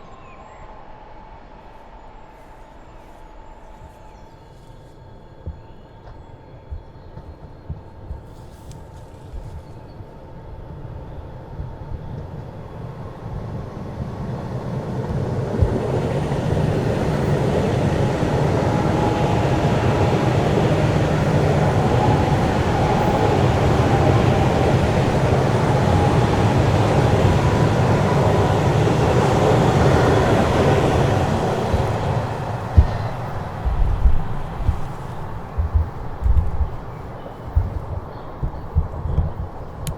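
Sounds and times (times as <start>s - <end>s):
electric train passing: 10.1s - 39.9s.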